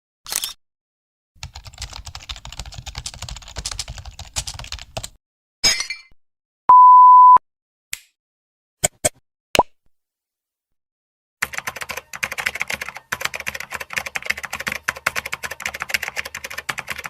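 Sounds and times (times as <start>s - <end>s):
censor bleep: 6.7s - 7.4s.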